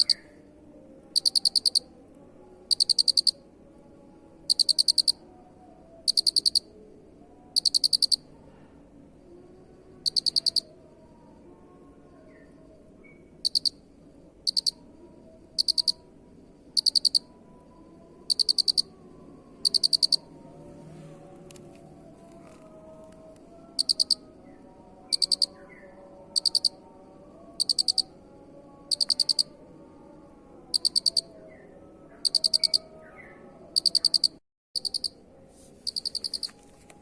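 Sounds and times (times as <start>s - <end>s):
cricket chirping: 0.0s - 8.6s, 9.2s - 20.9s, 23.6s - 33.0s, 33.7s - 36.7s.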